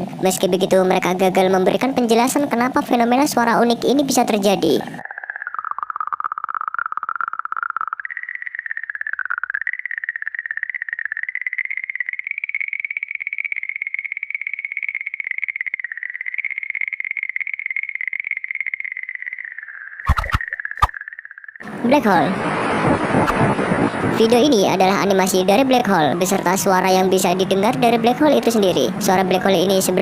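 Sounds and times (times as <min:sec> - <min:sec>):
fluttering electronic tone: 0:03.4 - 0:30.0.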